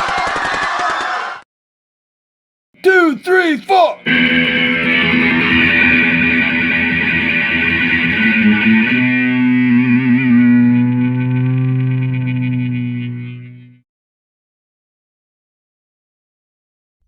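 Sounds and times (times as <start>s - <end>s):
distorted electric guitar chords: 4.0s - 13.8s.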